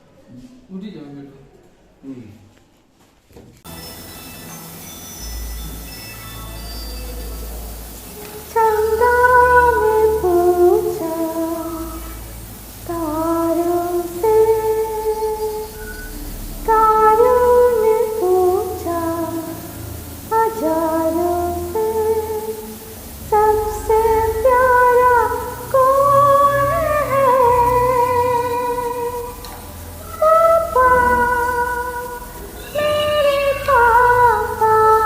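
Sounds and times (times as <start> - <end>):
slow music of held notes: 3.7 - 35.0
soft accompaniment: 3.7 - 35.0
woman singing slow melody: 8.1 - 35.0.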